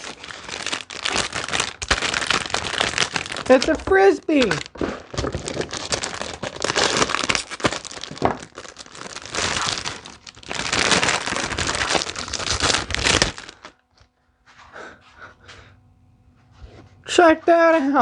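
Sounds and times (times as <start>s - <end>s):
packaging wrapper crinkling and tearing: 0.0s - 14.1s.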